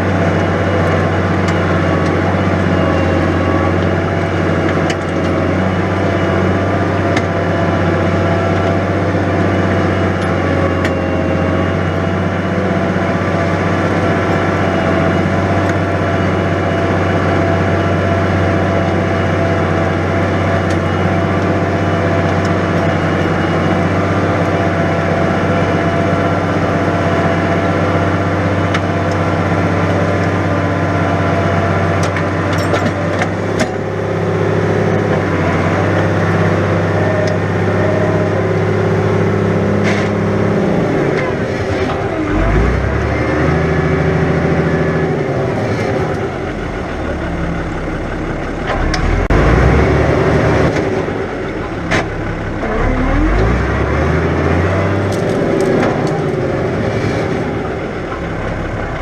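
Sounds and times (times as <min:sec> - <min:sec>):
tractor engine running under load: 0:00.0 - 0:59.0.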